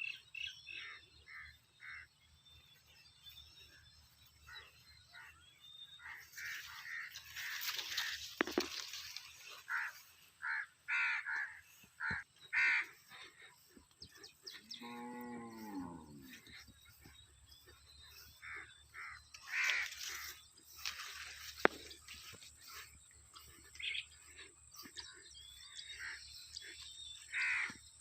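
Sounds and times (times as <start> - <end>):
crows cawing: 6.0 - 13.8, 18.1 - 27.9
cow mooing: 14.6 - 16.6.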